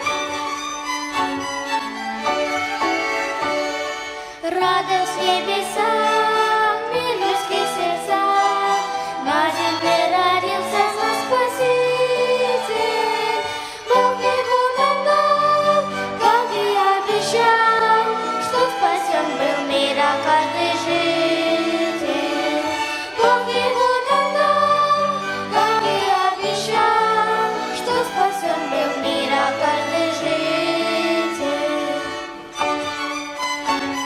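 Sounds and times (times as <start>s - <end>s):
violin ensemble: 0.0s - 34.0s
voices singing a church song: 5.4s - 32.4s.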